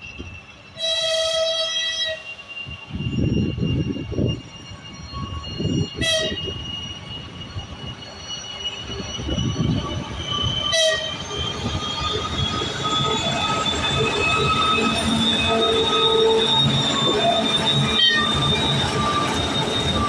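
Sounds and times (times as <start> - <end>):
freight train rolling: 0.0 - 20.0
wheels squealing on rails: 0.0 - 20.0.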